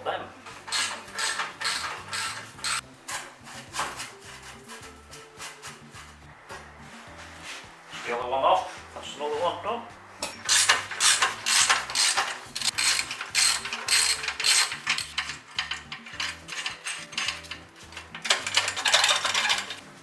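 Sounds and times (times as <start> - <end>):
ratchet spanner clicking: 0.7 - 2.8, 10.2 - 19.8.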